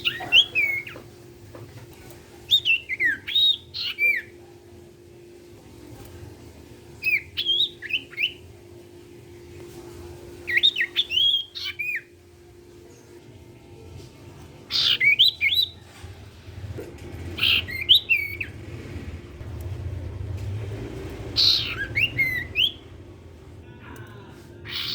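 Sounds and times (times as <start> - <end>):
faint steady hum: 0.0 - 24.9
bird whistled chirps: 7.0 - 8.4, 10.4 - 12.1, 21.4 - 22.8.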